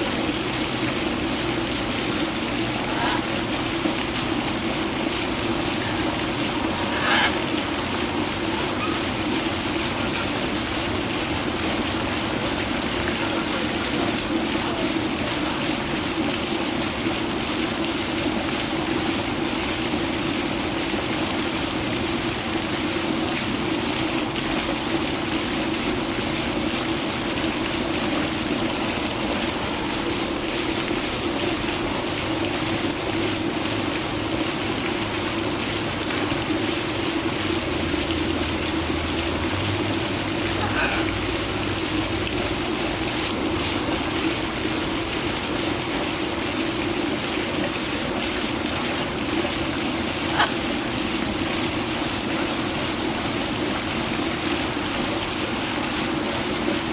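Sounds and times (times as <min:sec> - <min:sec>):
running water rushing: 0:00.0 - 0:56.9
parrot call: 0:06.8 - 0:07.5.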